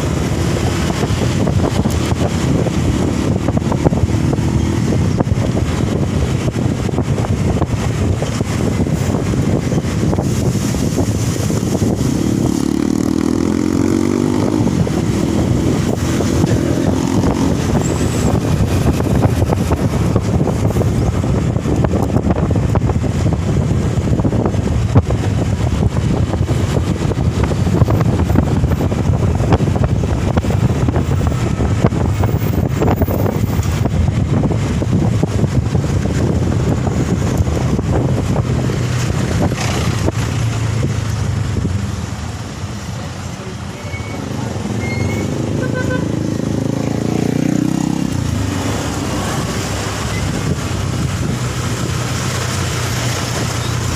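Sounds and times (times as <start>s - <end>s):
vehicle engine and road noise: 0.0s - 53.9s.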